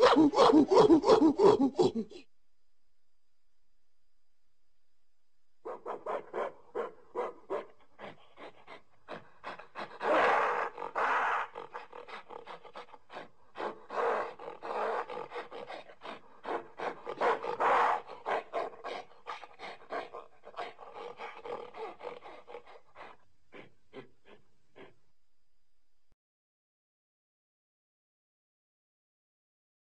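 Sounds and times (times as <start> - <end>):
ape grunting calls: 9.8 - 18.2.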